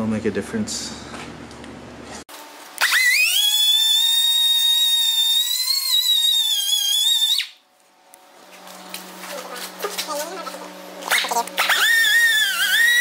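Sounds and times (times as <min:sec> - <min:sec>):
high-speed grinder whine: 0:02.8 - 0:07.3, 0:11.0 - 0:13.0.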